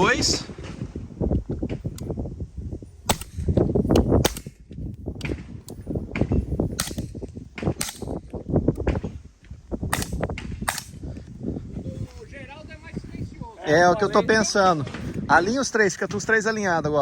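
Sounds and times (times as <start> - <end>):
suppressed rifle shots: 3.1 - 5.5, 6.7 - 8.2, 9.9 - 11.0.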